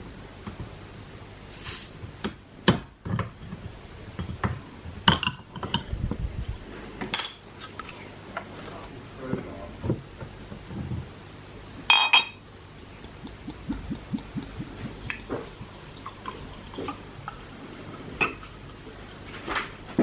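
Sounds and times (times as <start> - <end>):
tableware clinking: 11.9 - 12.4, 18.2 - 18.5.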